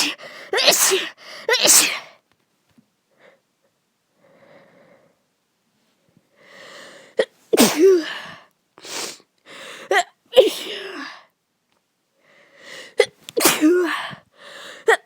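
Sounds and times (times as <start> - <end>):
person sneezing: 0.0 - 2.2, 7.2 - 9.2, 9.9 - 11.2, 13.0 - 14.2
person breathing in: 6.4 - 7.2, 12.2 - 13.0, 14.1 - 14.9.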